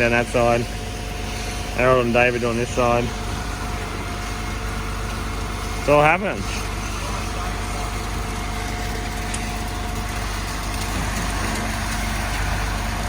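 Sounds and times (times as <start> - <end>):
diesel engine rumbling: 0.0 - 13.0
steady engine whine: 0.0 - 13.0.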